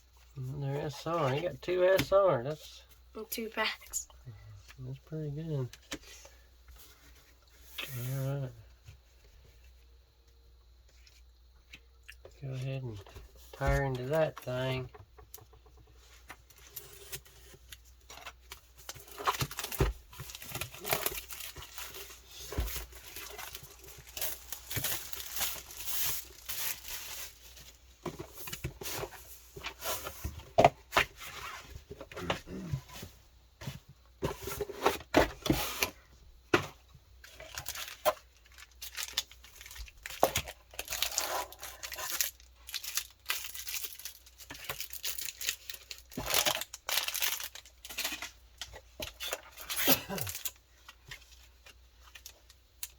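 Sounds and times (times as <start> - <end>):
plastic wrappers tearing and crinkling: 18.8 - 27.7, 37.3 - 50.6.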